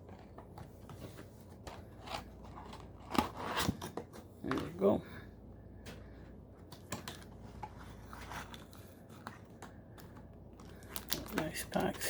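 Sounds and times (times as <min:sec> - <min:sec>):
foil packs rustling and clicking: 0:06.6 - 0:12.0.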